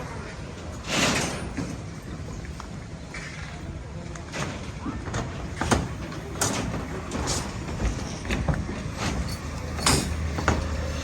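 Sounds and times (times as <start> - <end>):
metallic knocks and clanks: 4.4 - 10.8.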